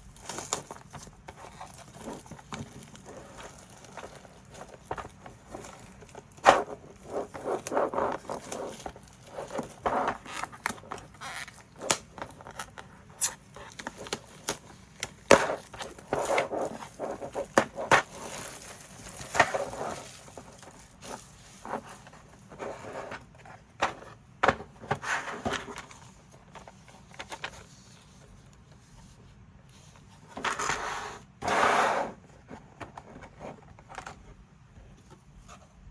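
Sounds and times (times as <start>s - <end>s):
packaging rustling and scraping: 0.0s - 35.9s.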